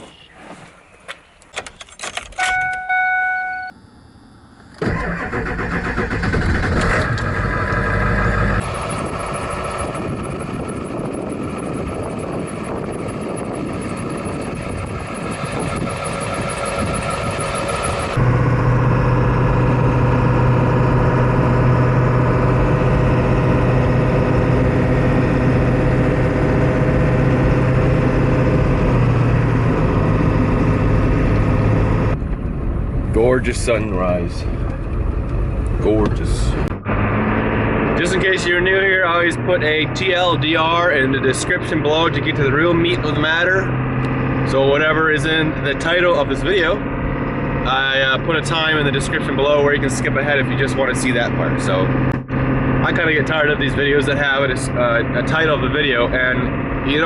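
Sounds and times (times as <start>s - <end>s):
short electronic chime: 2.4s - 3.7s
car engine cranking and running: 3.8s - 57.0s.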